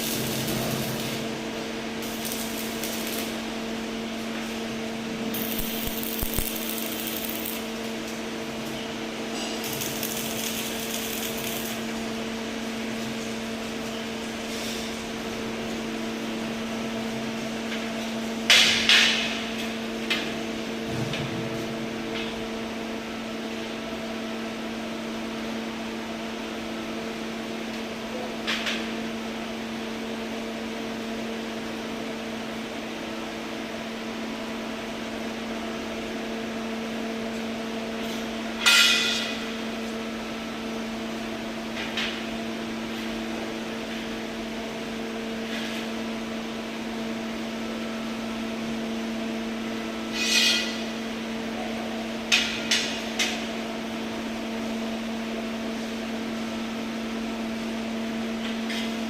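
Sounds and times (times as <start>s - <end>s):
machine hum: 0.0s - 14.3s.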